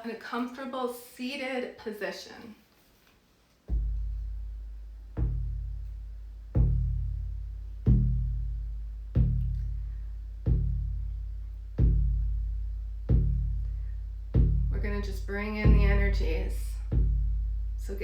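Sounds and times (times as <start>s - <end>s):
deep drum beaten slowly: 3.7s - 18.0s.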